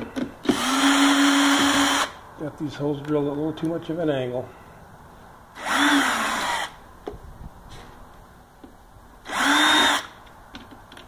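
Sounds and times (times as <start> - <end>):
power drill driving screws: 0.4 - 2.2, 5.6 - 6.8, 9.2 - 10.2.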